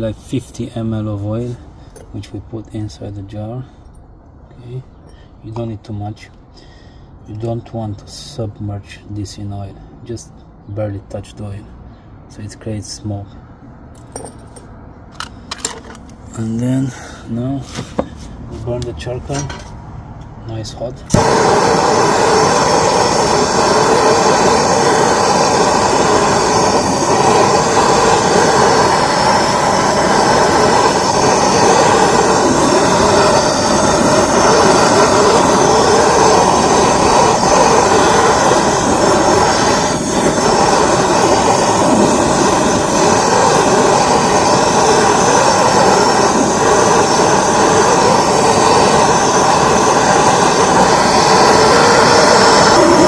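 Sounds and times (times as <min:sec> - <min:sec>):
loud rushing noise: 0:21.1 - 0:53.0.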